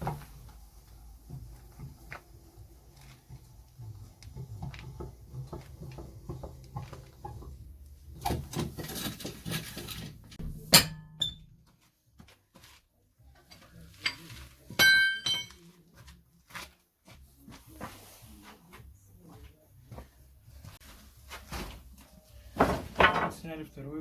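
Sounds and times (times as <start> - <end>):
metal tools clinking: 13.9 - 15.6.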